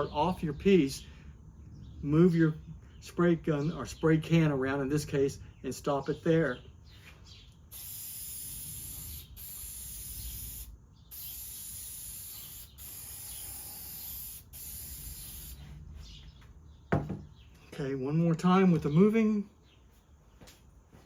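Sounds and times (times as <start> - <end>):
aerosol spray can hissing: 7.7 - 15.6.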